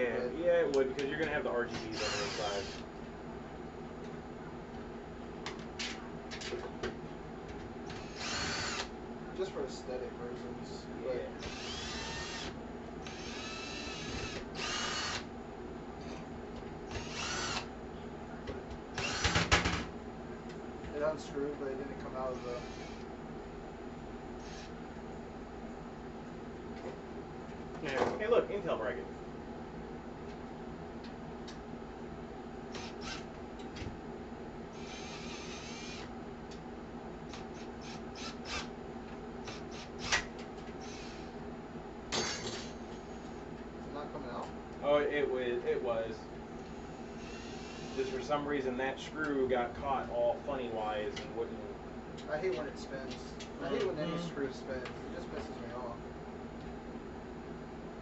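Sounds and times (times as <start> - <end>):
steady low hum: 0.0 - 58.0
power drill whining: 1.8 - 2.8, 7.9 - 8.9, 11.4 - 15.2, 16.9 - 17.7, 19.0 - 19.6, 22.3 - 23.0, 32.7 - 33.3, 34.8 - 36.1, 40.8 - 41.3, 47.0 - 48.0.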